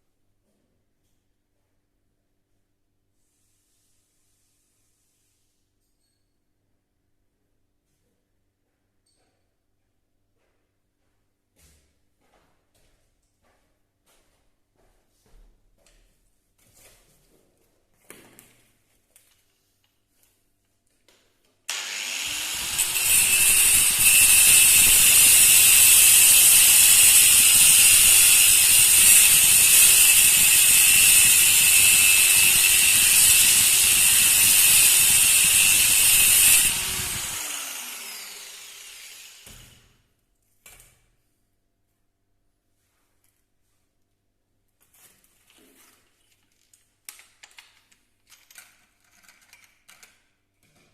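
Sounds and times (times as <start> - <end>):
electric power tool motor: 21.7 - 39.8.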